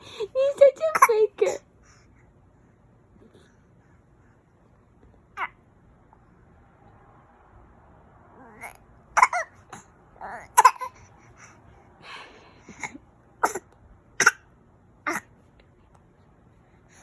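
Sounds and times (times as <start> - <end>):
baby coughing: 0.8 - 1.6, 9.1 - 11.1, 12.8 - 15.4
baby vocal sounds: 8.4 - 11.3.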